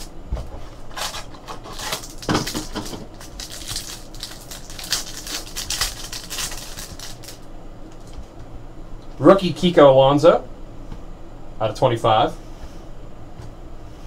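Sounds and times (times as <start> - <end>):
packaging rustling and crinkling: 0.0 - 8.2.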